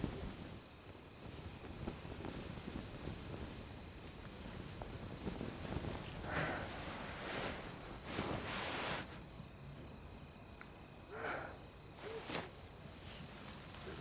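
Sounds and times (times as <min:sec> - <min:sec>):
rustling breathy swells: 0:01.2 - 0:09.3, 0:11.0 - 0:14.0.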